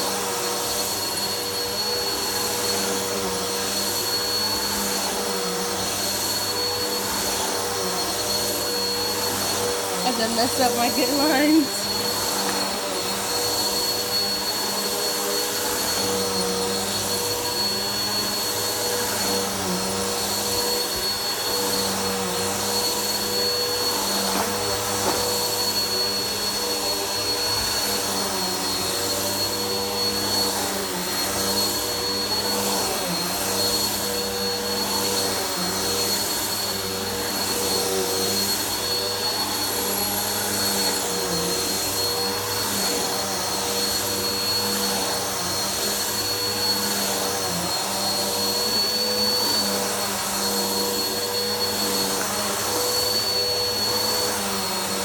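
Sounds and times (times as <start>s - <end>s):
vacuum cleaner running: 0.0s - 55.0s.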